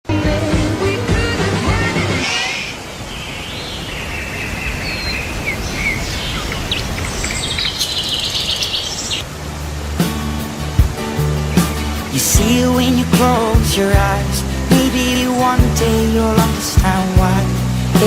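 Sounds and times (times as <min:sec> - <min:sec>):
music: 0:00.1 - 0:02.3, 0:09.3 - 0:18.0
rushing outdoor background: 0:00.1 - 0:18.0
birds chirping and calling: 0:02.2 - 0:09.2.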